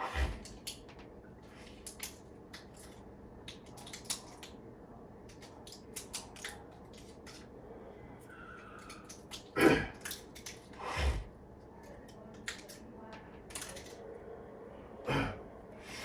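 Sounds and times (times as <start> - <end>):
small objects clicking and rustling: 1.6 - 4.6, 5.2 - 7.5, 12.1 - 14.0.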